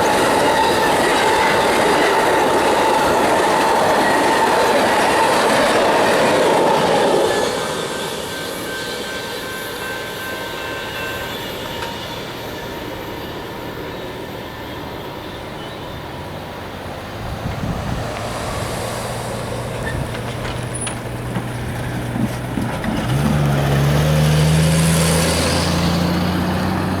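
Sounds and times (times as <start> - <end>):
engine drone: 0.0 - 27.0
passenger train rumbling past: 0.0 - 27.0.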